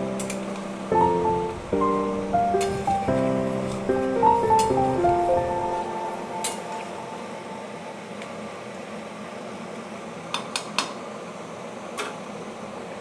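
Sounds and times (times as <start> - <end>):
background music: 0.0 - 8.0
steady hiss: 0.0 - 10.3.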